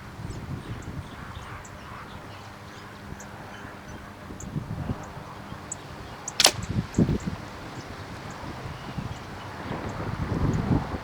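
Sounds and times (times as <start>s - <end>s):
wind rumbling on microphone: 3.0s - 11.0s.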